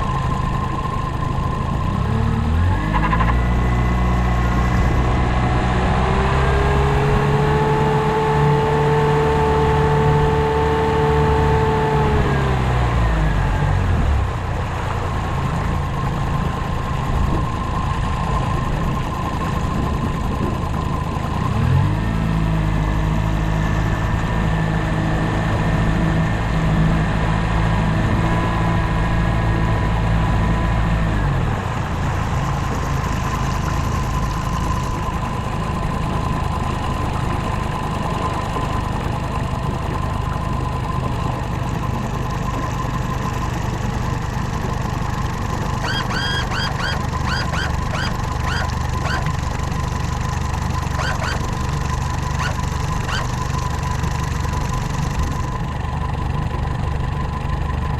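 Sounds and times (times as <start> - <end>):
outboard motor running: 0.0 - 57.9
thin steady tone: 42.2 - 55.5
short high chirps: 45.8 - 49.2.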